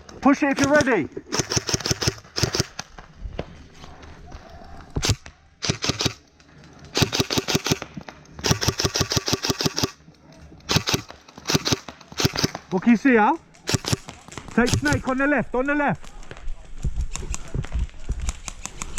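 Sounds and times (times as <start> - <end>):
airsoft guns firing bursts: 0.3 - 2.9, 5.0 - 10.0, 10.7 - 15.3.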